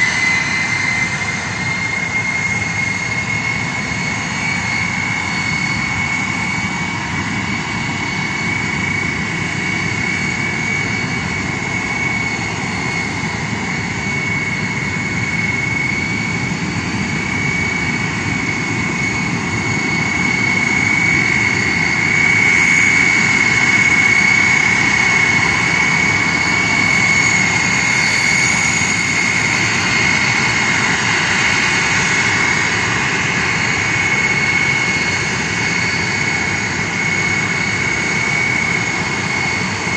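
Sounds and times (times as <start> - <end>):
jet engines running loud: 0.0 - 39.9.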